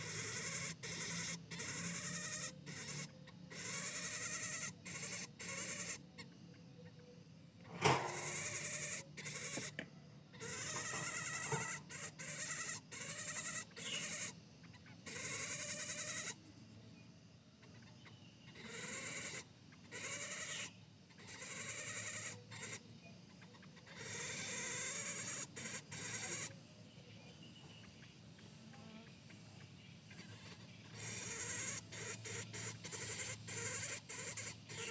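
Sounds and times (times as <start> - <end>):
bird harsh rattling call: 7.7 - 9.8, 10.4 - 16.4, 30.1 - 34.9.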